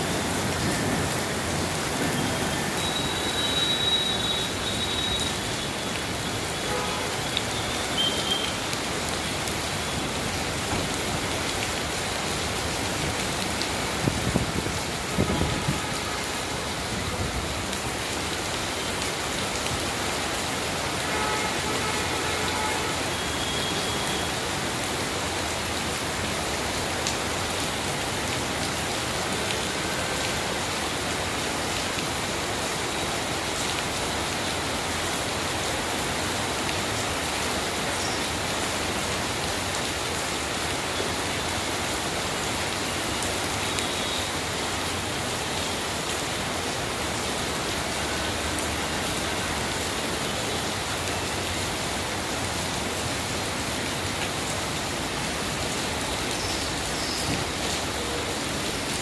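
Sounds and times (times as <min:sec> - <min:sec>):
heavy rain on hard surfaces: 0:00.0 - 0:59.0.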